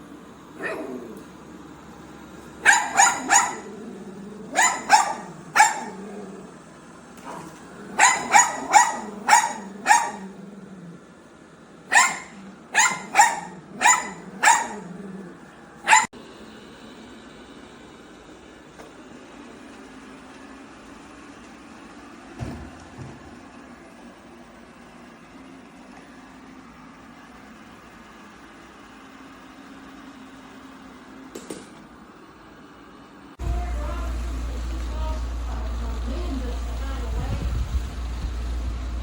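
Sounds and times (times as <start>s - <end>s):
dog barking: 0.6s - 1.1s, 2.6s - 3.8s, 4.5s - 6.2s, 7.2s - 10.4s, 11.9s - 14.9s, 15.8s - 16.1s.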